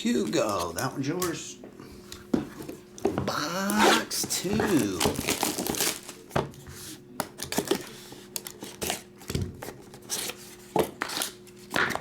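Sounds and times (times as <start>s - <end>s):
cardboard and plastic tearing: 3.6s - 6.3s.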